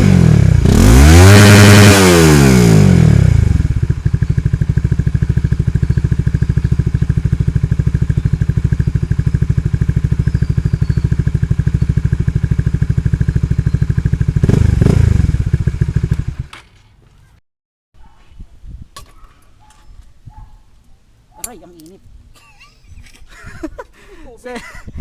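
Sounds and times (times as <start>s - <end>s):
motorcycle engine idling: 3.1s - 16.5s.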